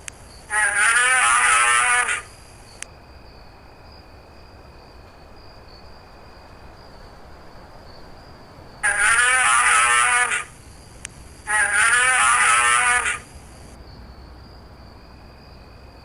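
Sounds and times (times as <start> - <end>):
faint steady high hum: 0.0 - 16.0
bear wavering cry: 0.5 - 2.3, 8.8 - 10.5, 11.5 - 13.3.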